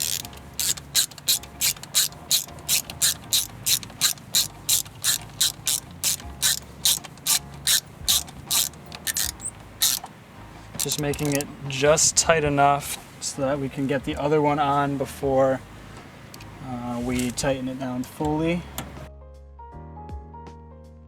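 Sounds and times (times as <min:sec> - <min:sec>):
hand ratchet clicking: 0:00.0 - 0:10.1, 0:10.8 - 0:11.5, 0:17.1 - 0:17.5.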